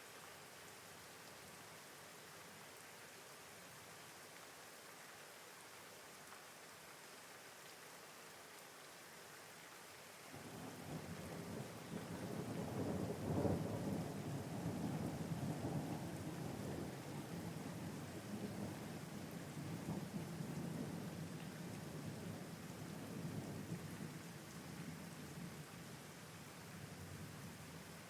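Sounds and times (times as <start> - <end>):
faint steady rain hiss: 0.0 - 28.0
thunder rumbling: 10.4 - 17.7.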